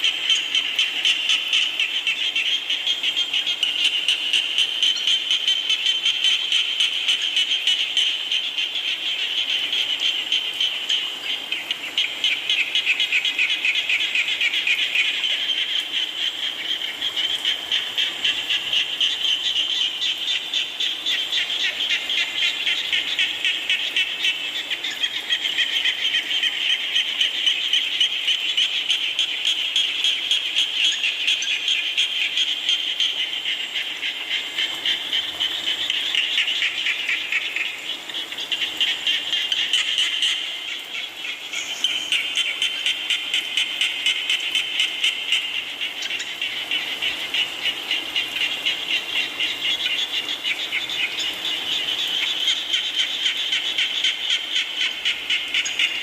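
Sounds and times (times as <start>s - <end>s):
frogs trilling in chorus: 0.0s - 56.0s.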